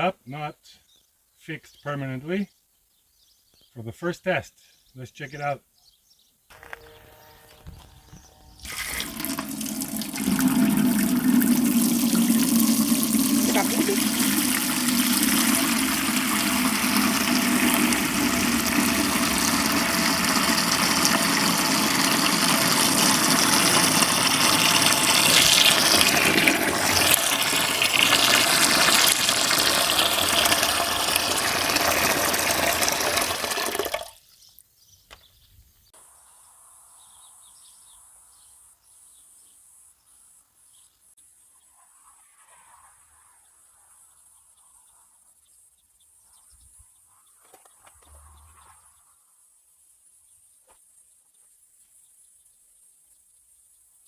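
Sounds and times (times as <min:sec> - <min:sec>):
tap water running into bucket: 0:06.5 - 0:34.2.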